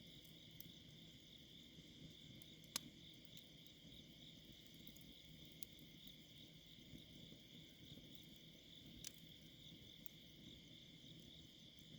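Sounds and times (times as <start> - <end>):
crickets and night insects: 0.0 - 11.9
campfire crackling pops: 2.1 - 6.3, 7.3 - 10.2.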